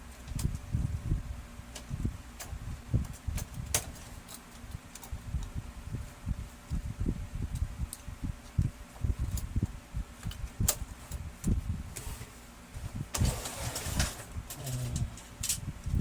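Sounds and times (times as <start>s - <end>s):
scraping rustle: 11.9s - 15.4s.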